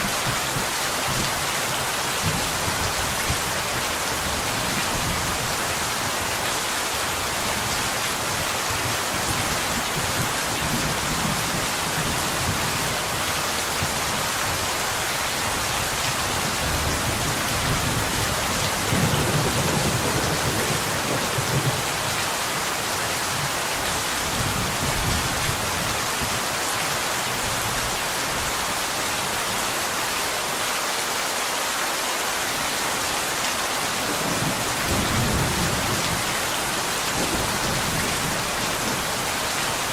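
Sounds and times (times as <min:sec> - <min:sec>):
rain falling on a window: 0:00.1 - 0:30.8
distant thunder rumble: 0:17.0 - 0:22.1.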